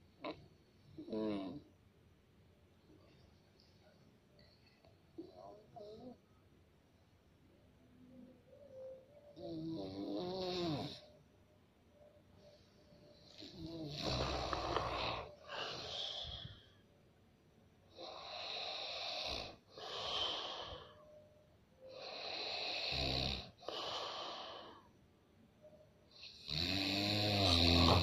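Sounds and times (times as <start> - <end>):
person snoring heavily: 13.4 - 16.6, 18.0 - 20.9, 21.9 - 24.8, 26.3 - 28.0.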